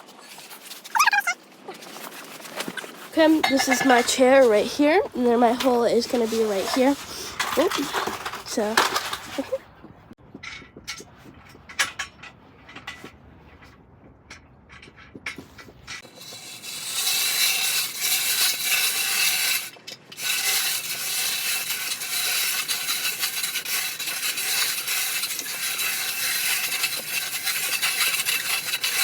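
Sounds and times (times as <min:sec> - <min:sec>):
ice auger grinding: 0:03.1 - 0:09.6, 0:16.0 - 0:29.0.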